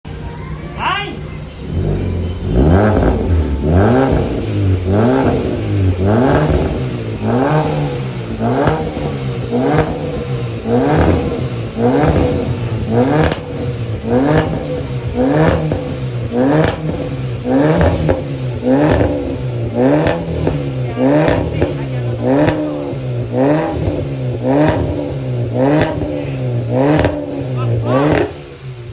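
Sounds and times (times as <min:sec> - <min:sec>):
car engine revving: 0:01.3 - 0:28.9.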